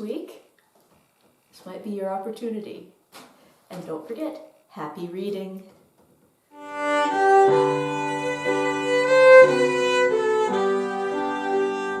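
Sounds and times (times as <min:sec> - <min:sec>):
slow bowed string music: 0:06.6 - 0:12.0.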